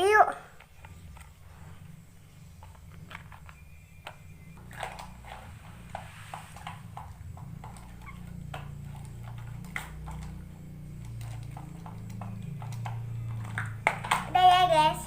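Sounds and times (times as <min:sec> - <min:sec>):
low steady hum: 0:00.0 - 0:15.0
plastic toys clicking: 0:02.6 - 0:15.0.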